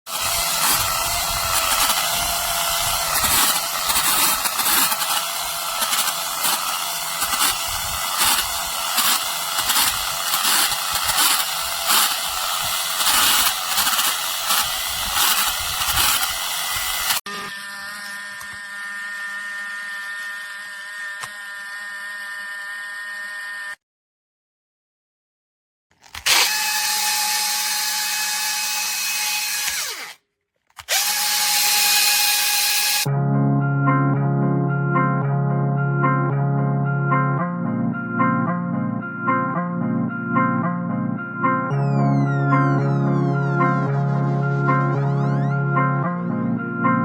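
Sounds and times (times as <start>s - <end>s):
hair dryer air rush: 0.1s - 22.0s, 30.9s - 33.1s
motor whine: 0.1s - 23.8s, 41.7s - 45.8s.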